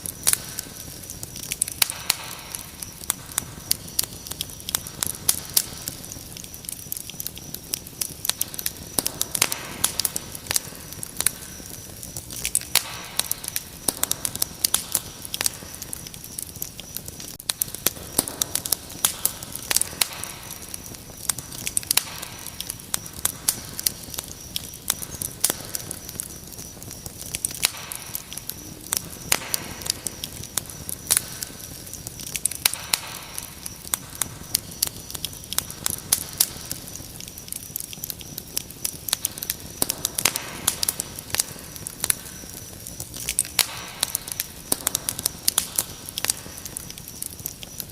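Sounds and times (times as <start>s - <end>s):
crickets trilling: 0.0s - 47.9s
wood fire crackling and popping: 0.0s - 47.9s.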